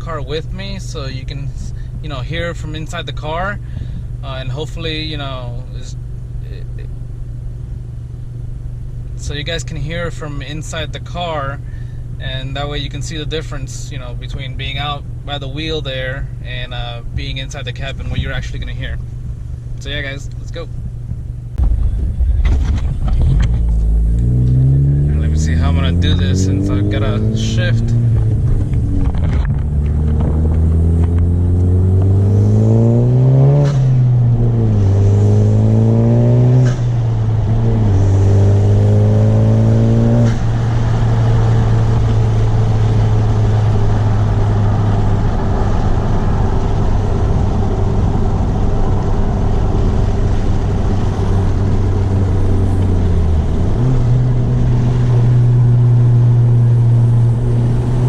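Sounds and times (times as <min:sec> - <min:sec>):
car engine revving: 0:20.5 - 0:58.0.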